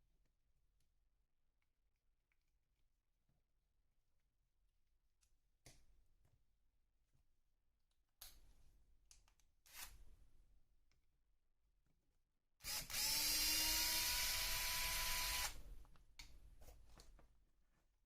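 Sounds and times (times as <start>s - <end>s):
electric screwdriver running: 12.6s - 15.6s.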